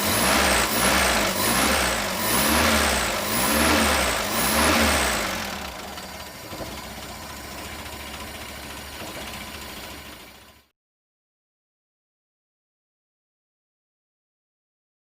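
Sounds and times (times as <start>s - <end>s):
van engine revving and idling: 0.0s - 10.7s.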